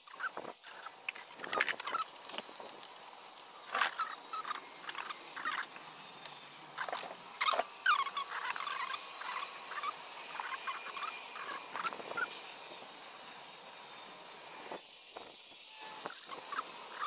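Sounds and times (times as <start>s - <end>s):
small parts and tools clicking: 0.0s - 12.2s
short squeaky chirps: 3.7s - 5.7s, 6.8s - 12.3s.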